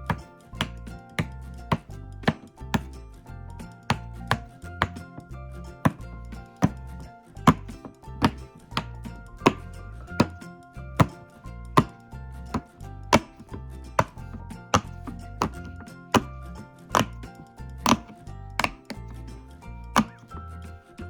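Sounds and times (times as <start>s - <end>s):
quiet background music: 0.0s - 21.0s
pop-it toy bubbles popping: 0.1s - 3.0s, 11.0s - 17.3s, 17.9s - 19.1s.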